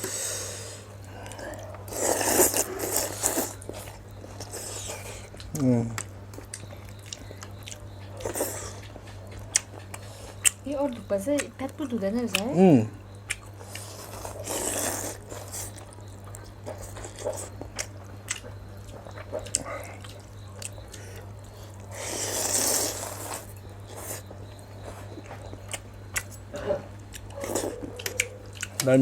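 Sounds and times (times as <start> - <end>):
low steady hum: 0.0 - 29.0
person chewing: 1.0 - 10.6, 13.2 - 28.9
person slurping soup: 1.9 - 3.6, 21.9 - 23.4.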